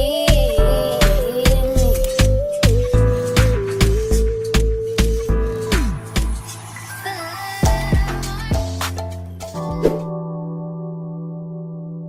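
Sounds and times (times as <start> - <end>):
person singing: 0.0 - 4.3, 6.9 - 9.0
r and b music with a beat: 0.0 - 10.1.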